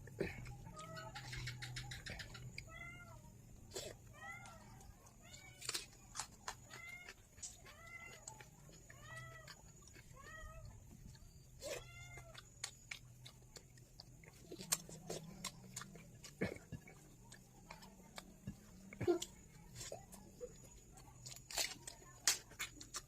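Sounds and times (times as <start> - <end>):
eating clicks and smacks: 0.0 - 2.7
cat meowing: 11.6 - 12.4.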